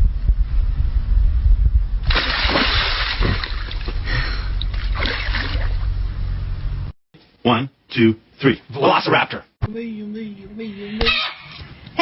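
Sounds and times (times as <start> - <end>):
low rumble: 0.0 - 7.0
water splashing and sloshing: 2.0 - 6.2.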